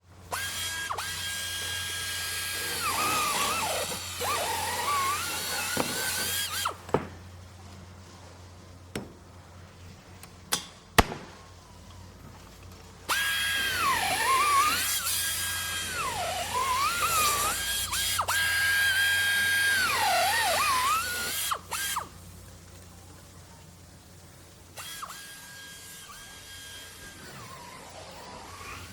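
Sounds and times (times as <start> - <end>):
electric drill whining: 0.3 - 6.8, 13.1 - 22.1, 24.8 - 28.9.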